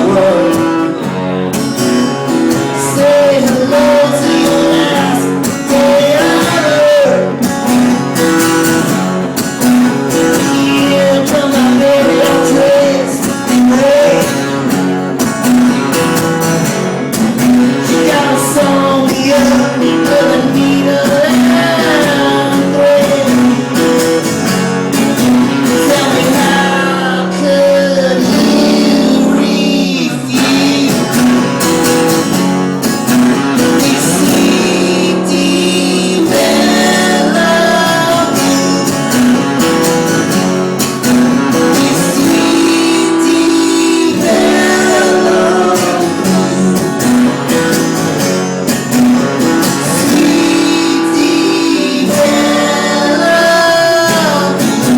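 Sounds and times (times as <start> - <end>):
person singing: 0.0 - 1.1, 2.4 - 8.1, 10.2 - 14.8, 17.5 - 23.8, 25.0 - 31.6, 33.5 - 39.4, 41.5 - 47.6, 49.5 - 54.9
acoustic guitar playing blues: 0.0 - 54.9.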